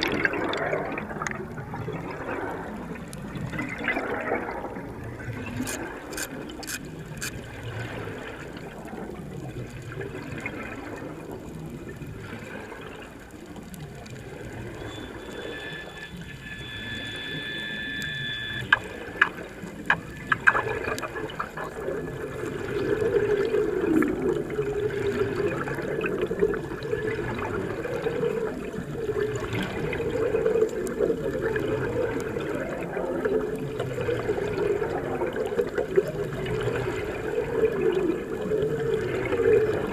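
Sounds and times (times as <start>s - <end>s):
water bubbling and churning: 0.0s - 39.9s
sharp clicks: 5.6s - 7.4s
steady whistling tone: 14.6s - 19.2s.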